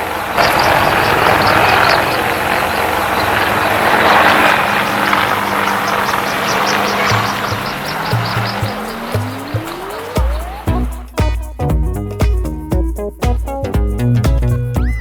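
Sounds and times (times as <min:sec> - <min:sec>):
helicopter flying overhead: 0:00.0 - 0:10.9.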